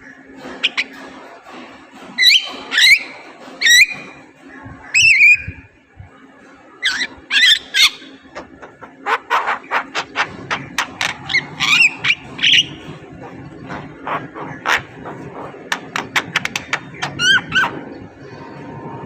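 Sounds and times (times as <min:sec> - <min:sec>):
bird clicks and chatter: 0:06.9 - 0:12.8, 0:13.6 - 0:17.7.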